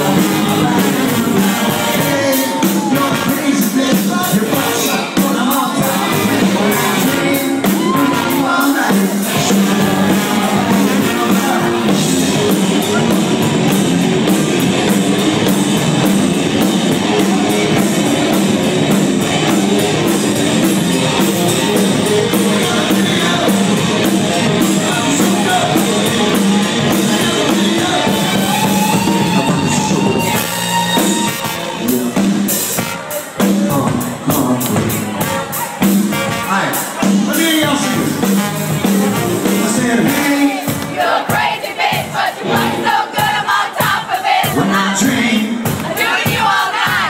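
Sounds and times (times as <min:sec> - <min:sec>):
person singing: 0:00.0 - 0:13.7, 0:15.4 - 0:38.3
drum beat: 0:00.0 - 0:47.0
live rock band: 0:00.0 - 0:47.0.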